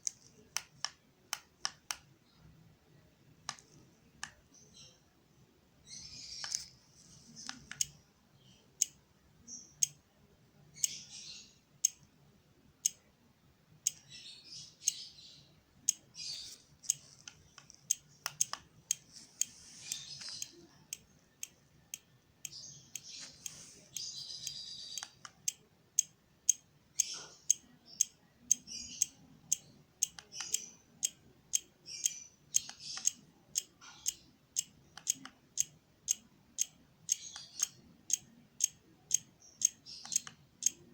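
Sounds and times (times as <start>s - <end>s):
sharp clicks: 7.4s - 8.0s, 15.9s - 40.9s.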